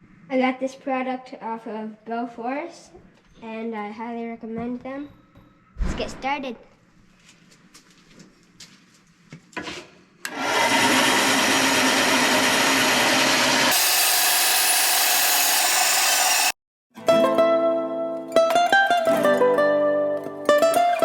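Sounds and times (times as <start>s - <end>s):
power tool grinding wood: 10.3s - 16.6s
plucked-string music: 17.0s - 21.0s.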